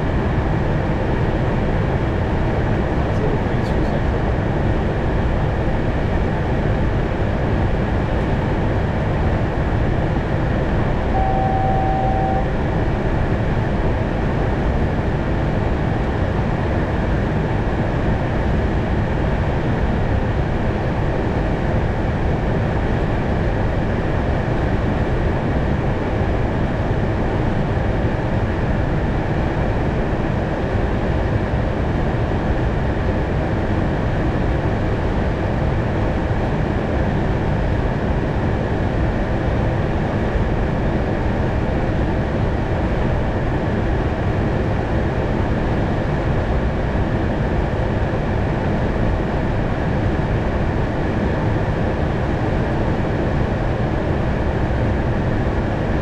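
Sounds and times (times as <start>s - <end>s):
airflow and engine noise: 0.0s - 56.0s
single steady tone: 10.8s - 12.8s.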